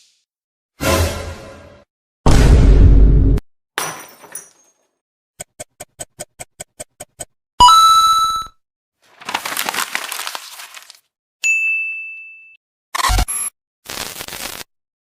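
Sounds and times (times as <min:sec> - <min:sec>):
ringing ding: 0:11.4 - 0:12.6
crackling noise: 0:13.9 - 0:14.7.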